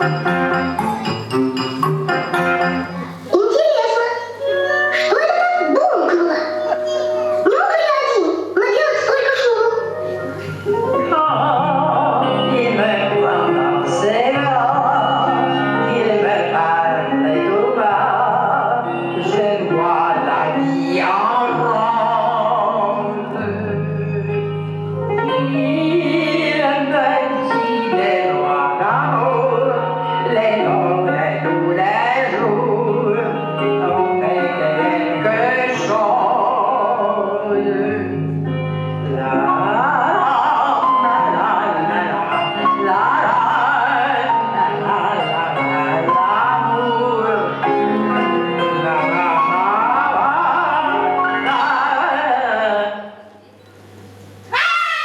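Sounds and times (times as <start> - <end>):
operatic singing: 10.0 - 23.6.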